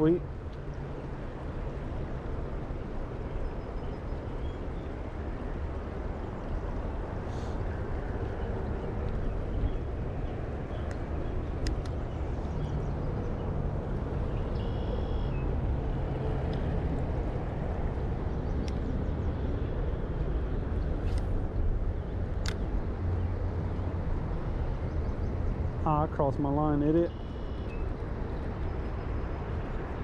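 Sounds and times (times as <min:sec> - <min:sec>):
faint clicks: 0:10.8 - 0:12.6, 0:22.3 - 0:22.7.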